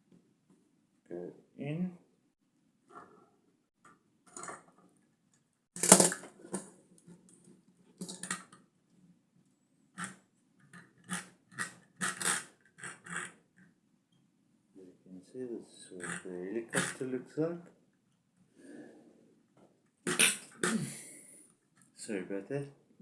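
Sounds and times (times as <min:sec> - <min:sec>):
plastic toy bricks clicking: 0:05.8 - 0:06.6, 0:08.0 - 0:08.6.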